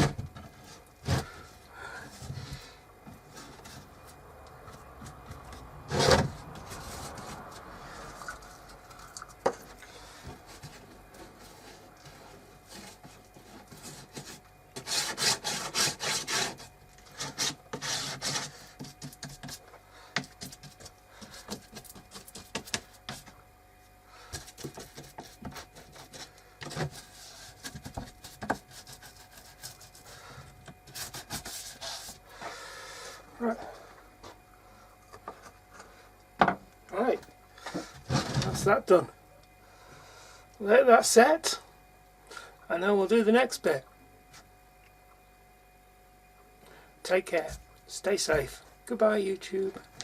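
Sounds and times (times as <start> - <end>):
scraping on wood: 0.0 - 23.4, 24.2 - 32.7, 37.6 - 38.7.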